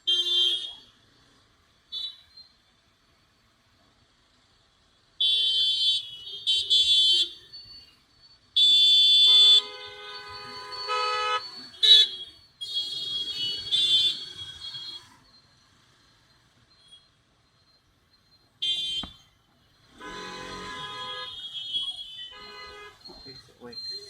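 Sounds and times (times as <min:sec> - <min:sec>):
high-pitched horn toots: 0:19.9 - 0:23.4.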